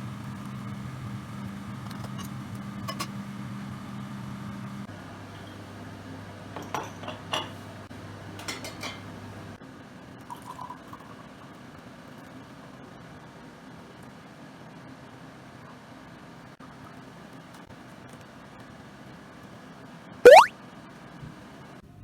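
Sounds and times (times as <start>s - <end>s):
dishes and glassware clinking: 6.6s - 7.6s.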